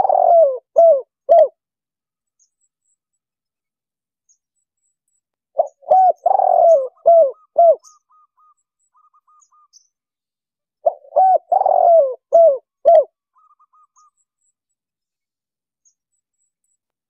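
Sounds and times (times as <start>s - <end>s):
dove cooing: 0.0s - 1.6s, 5.6s - 9.7s, 10.8s - 14.1s.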